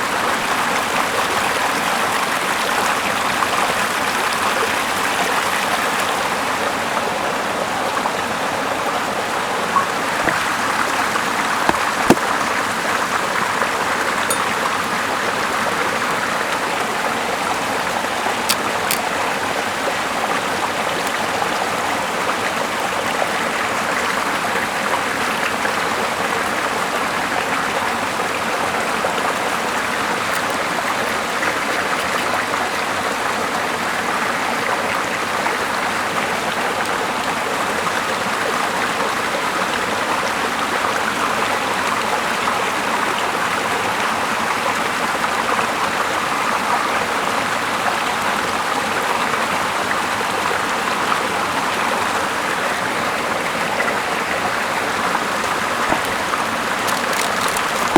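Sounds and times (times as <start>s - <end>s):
water rushing: 0.0s - 26.2s.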